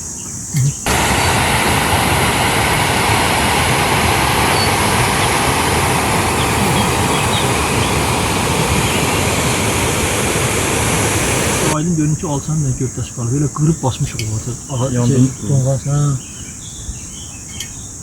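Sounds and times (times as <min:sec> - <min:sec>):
loud steady rushing noise: 0:00.8 - 0:11.9.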